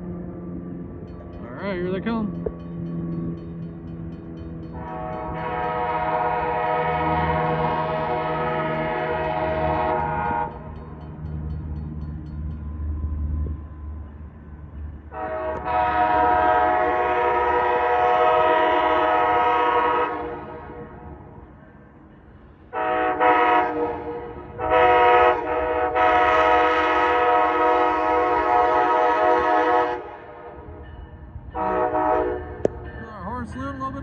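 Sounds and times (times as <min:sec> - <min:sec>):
locomotive air horn blasts: 0:04.7 - 0:10.6, 0:15.1 - 0:21.1, 0:22.7 - 0:30.8, 0:31.6 - 0:32.7.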